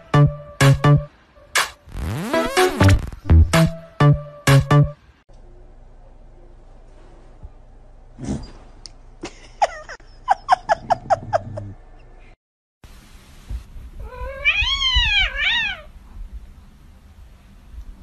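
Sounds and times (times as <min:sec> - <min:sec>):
cat meowing: 0:14.0 - 0:15.9
cat yowling: 0:14.0 - 0:15.9.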